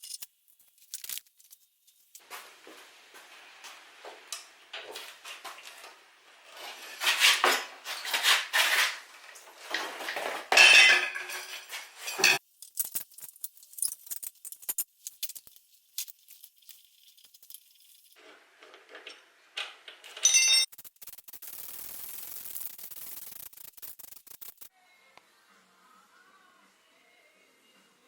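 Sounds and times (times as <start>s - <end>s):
metal parts and tools clinking: 0.0s - 2.2s, 7.5s - 21.0s.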